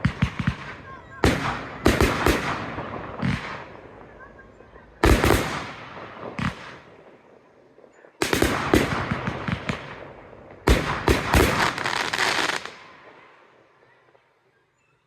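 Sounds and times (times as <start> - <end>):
fireworks bangs: 0.0 - 13.5
rapid crackling of fireworks: 0.0 - 14.5.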